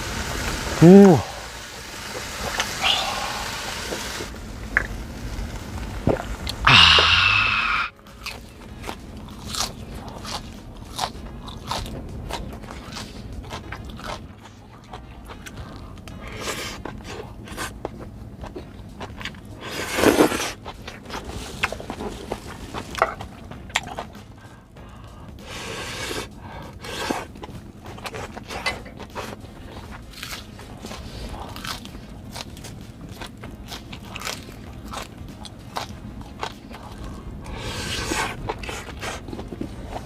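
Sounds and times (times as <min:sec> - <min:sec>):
loud noisy burst: 0:00.0 - 0:04.3
chewing with small clicks: 0:08.2 - 0:19.5, 0:27.3 - 0:37.6.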